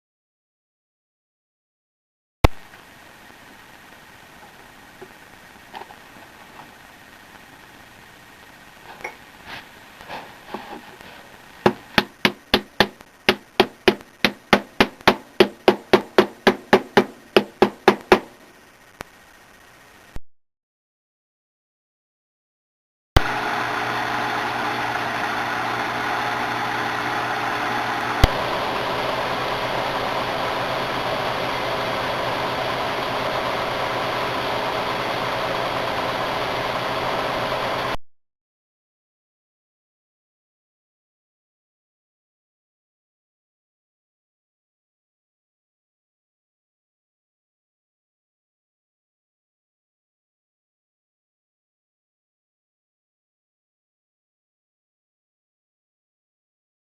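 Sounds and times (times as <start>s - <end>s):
washing machine drum whirring: 23.3s - 38.0s.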